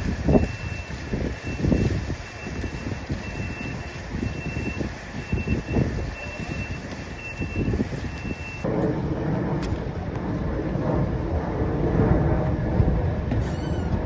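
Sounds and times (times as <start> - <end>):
low rumble of traffic: 0.0 - 14.0
outdoor street noise: 0.0 - 14.0
reversing alarm beeping: 0.3 - 8.7.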